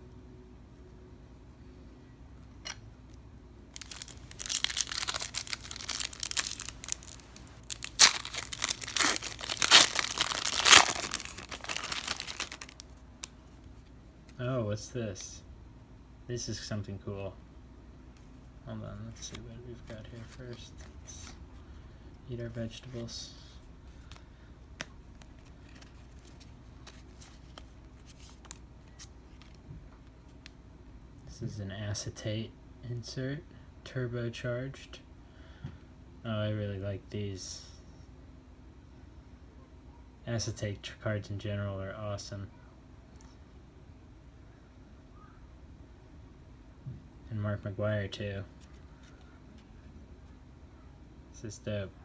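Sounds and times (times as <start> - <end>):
wrapper tearing and crinkling: 3.7 - 13.3
trading cards rustling and ticking: 3.8 - 13.8, 23.9 - 29.6.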